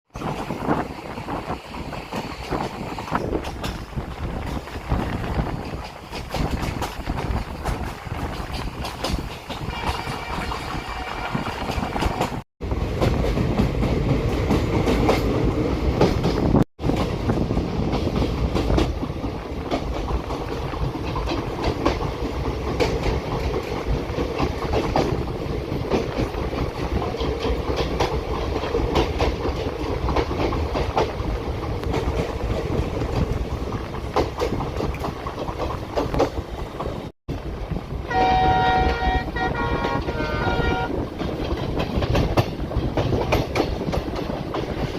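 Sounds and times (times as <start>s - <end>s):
train rumble: 0.1s - 44.9s
wheel clicks over rail joints: 2.1s - 9.9s, 41.1s - 44.9s
train horn chord: 9.7s - 11.6s, 38.1s - 41.0s.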